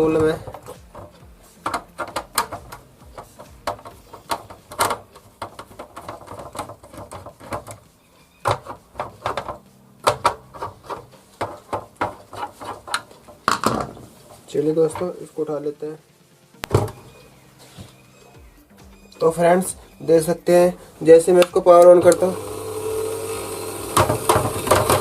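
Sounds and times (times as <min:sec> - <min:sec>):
plastic housing clicks and knocks: 0:00.1 - 0:07.8, 0:08.4 - 0:14.0.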